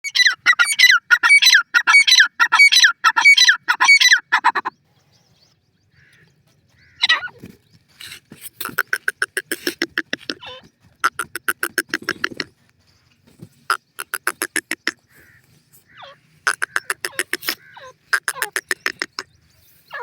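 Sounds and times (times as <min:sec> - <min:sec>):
francolin calling: 0:13.7 - 0:20.0.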